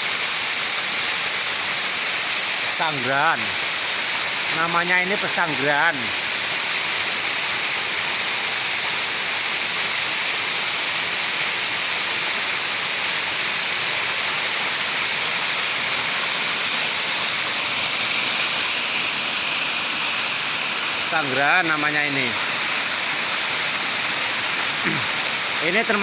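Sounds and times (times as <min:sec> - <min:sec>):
waterfall roaring: 0:02.6 - 0:06.5, 0:14.1 - 0:26.0.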